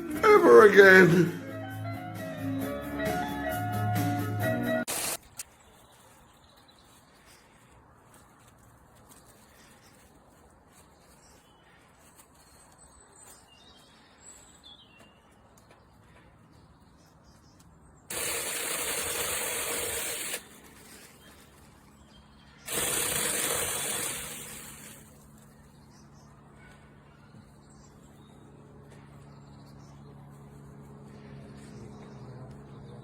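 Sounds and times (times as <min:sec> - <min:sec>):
mini chainsaw running: 0:18.1 - 0:20.7, 0:22.7 - 0:25.2.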